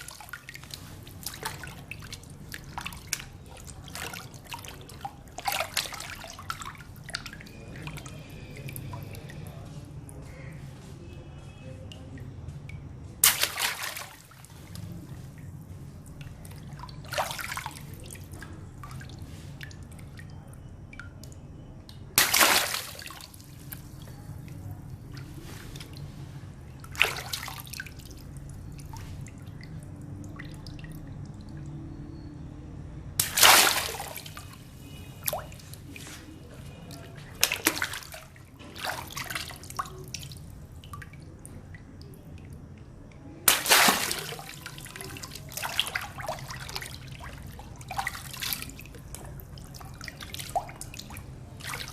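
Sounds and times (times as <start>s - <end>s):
water splashing and dripping: 0.0s - 10.9s, 11.8s - 32.0s, 33.1s - 51.9s
water balloons bursting: 13.2s - 14.3s, 22.1s - 24.0s, 33.2s - 34.3s, 43.4s - 46.5s.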